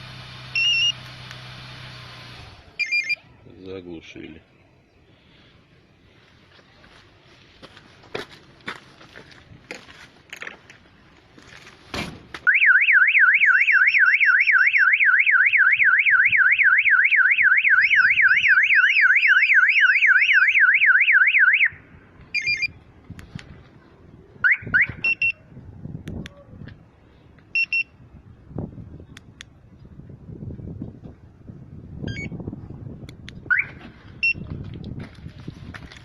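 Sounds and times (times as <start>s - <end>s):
car alarm chirp: 0.6s - 1.0s, 2.8s - 3.3s, 12.5s - 21.8s, 22.4s - 22.8s, 24.4s - 25.4s, 27.6s - 27.9s, 33.5s - 34.4s
short beeps: 2.8s - 3.3s, 22.4s - 22.8s, 24.5s - 25.4s, 27.6s - 27.9s, 33.5s - 34.4s
car alarm siren wailing: 12.5s - 21.8s, 24.4s - 25.3s, 33.5s - 33.8s.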